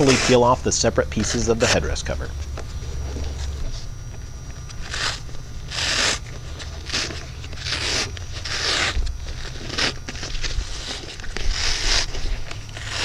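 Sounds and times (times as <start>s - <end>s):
fabric ripping off foam: 4.7s - 13.0s.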